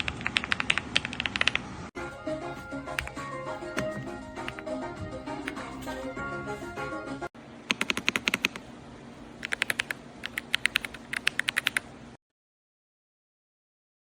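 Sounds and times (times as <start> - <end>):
mechanical keyboard typing: 0.0 - 1.6, 7.7 - 8.7, 9.4 - 11.9
faint steady hum: 0.0 - 12.2
background music: 2.0 - 7.3.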